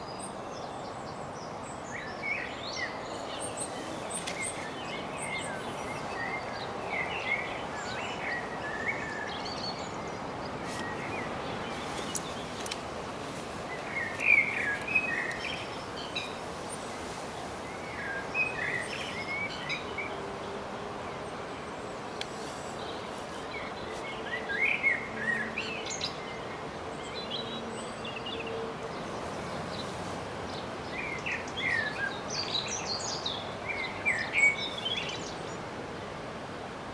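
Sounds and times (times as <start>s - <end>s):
bird chirping: 0.0s - 35.6s
steady background hiss: 0.0s - 36.9s.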